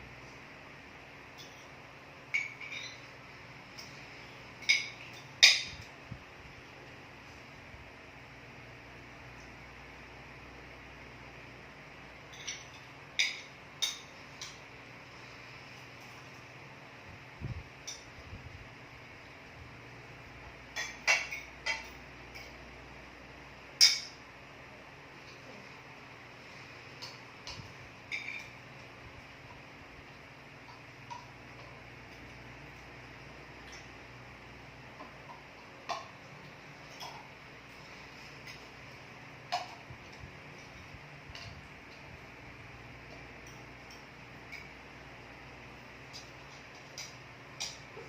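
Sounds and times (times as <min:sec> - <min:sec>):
cutlery clinking on dishes: 0:02.4 - 0:03.1, 0:20.8 - 0:22.6.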